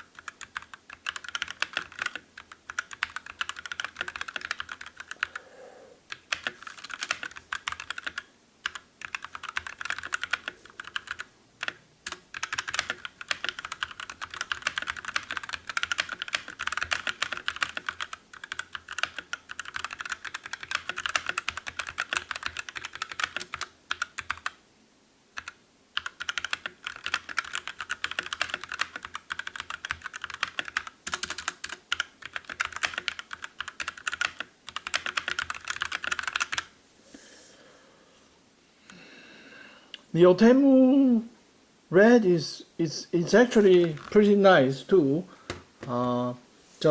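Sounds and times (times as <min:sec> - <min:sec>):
typing on mechanical keyboard: 0:00.0 - 0:05.4, 0:06.1 - 0:24.6, 0:25.4 - 0:36.7, 0:43.8 - 0:44.2.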